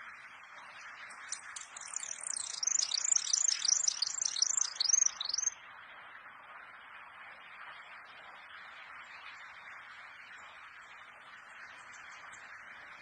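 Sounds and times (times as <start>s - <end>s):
songbird singing: 0.7s - 5.6s.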